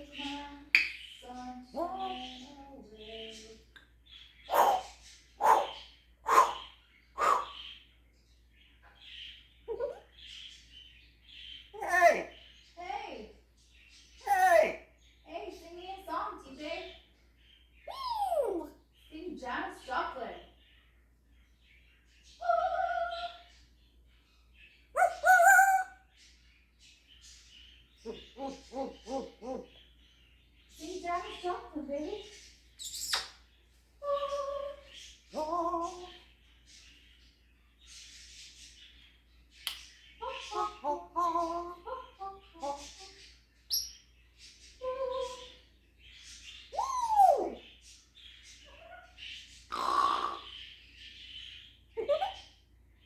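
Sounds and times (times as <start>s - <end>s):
parrot calling: 0.0s - 3.7s, 4.5s - 7.9s, 11.6s - 12.5s, 14.2s - 15.0s, 17.8s - 20.3s, 22.4s - 23.5s, 24.8s - 26.1s, 27.9s - 30.0s, 30.8s - 36.4s, 39.6s - 45.8s, 46.4s - 52.7s
parrot call: 4.5s - 7.6s, 24.9s - 26.1s, 40.2s - 44.0s, 46.7s - 47.6s, 48.6s - 50.7s.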